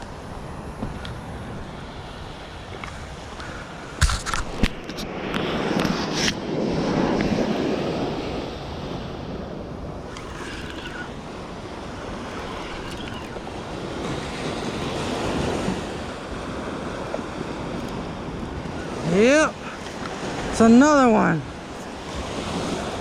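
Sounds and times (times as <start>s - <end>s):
ocean surf washing up beach: 0.0s - 23.0s.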